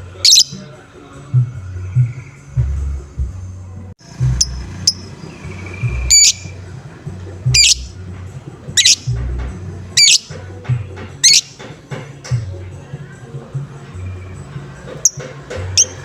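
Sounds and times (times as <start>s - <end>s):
lovebird squawking: 0.0s - 0.8s, 4.1s - 10.5s, 11.1s - 11.8s, 14.9s - 16.0s
bird held whistle: 0.2s - 0.7s, 4.3s - 6.6s, 7.5s - 8.0s, 8.8s - 9.2s, 10.0s - 10.4s, 11.2s - 11.6s
low thumps: 1.3s - 16.0s.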